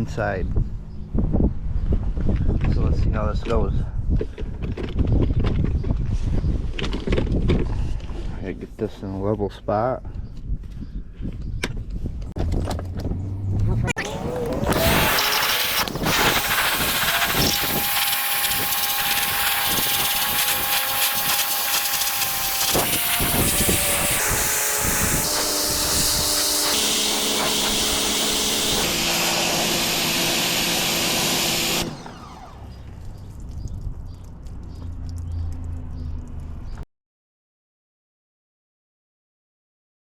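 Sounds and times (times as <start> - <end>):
pressure washer motor: 13.6 - 33.2
pressure washer spray hissing: 14.6 - 32.0.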